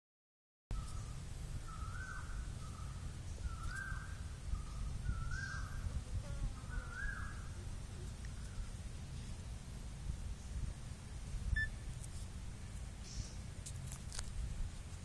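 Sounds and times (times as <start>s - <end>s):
bird calling: 0.7s - 5.9s, 6.6s - 7.7s.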